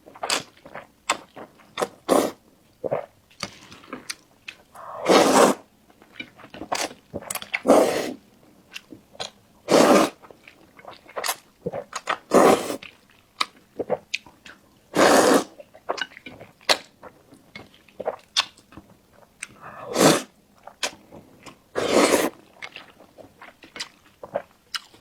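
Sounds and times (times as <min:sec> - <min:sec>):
wet chewing and mouth clicks: 0:00.1 - 0:02.2, 0:06.0 - 0:07.8, 0:08.7 - 0:09.4, 0:10.1 - 0:14.6, 0:15.6 - 0:19.6, 0:20.6 - 0:25.0.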